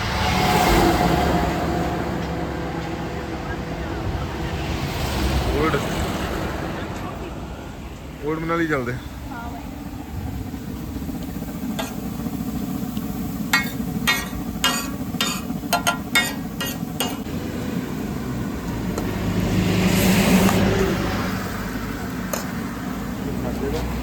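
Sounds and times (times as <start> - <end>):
vehicle engine and road rumble: 0.0 - 24.0.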